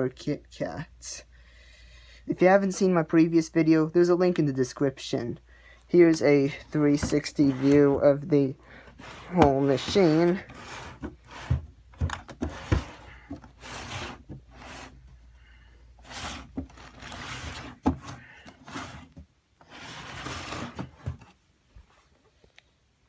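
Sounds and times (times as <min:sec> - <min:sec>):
scrapes and rubs of handling: 0:06.7 - 0:15.2, 0:16.0 - 0:22.4.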